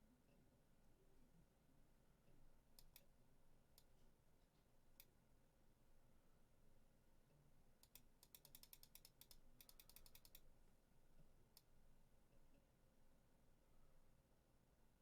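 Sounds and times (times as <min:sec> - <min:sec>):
typing on computer keyboard: 0:07.8 - 0:10.4.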